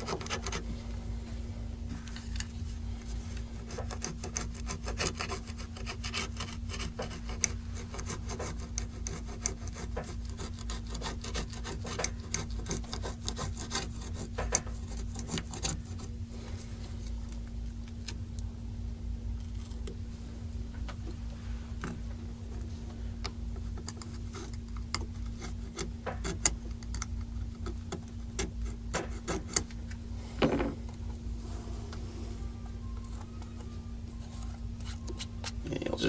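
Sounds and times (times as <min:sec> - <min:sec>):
pick scraping and clicking: 0:00.0 - 0:00.6, 0:03.3 - 0:16.1, 0:21.8 - 0:30.0
steady low hum: 0:00.0 - 0:36.0.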